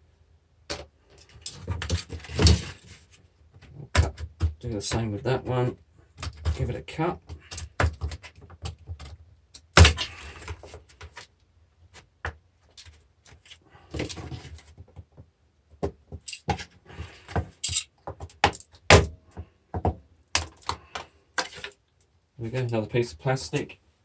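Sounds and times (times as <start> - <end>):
parts clattering on bench: 16.2 - 19.1.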